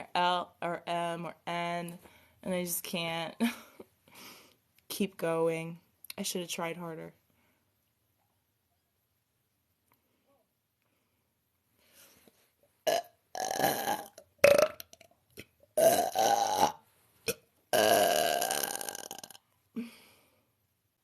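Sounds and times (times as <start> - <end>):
woman belching: 12.9 - 15.1, 15.8 - 19.4.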